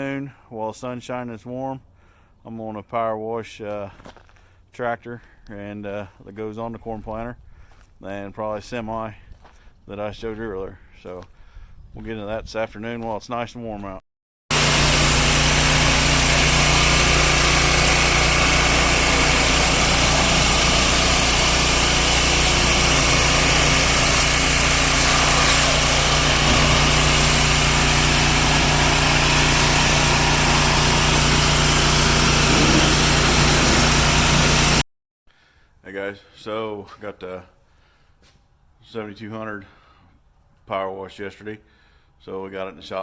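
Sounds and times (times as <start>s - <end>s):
pressure washer engine drone: 14.5s - 34.8s
water spray hiss: 14.5s - 34.8s.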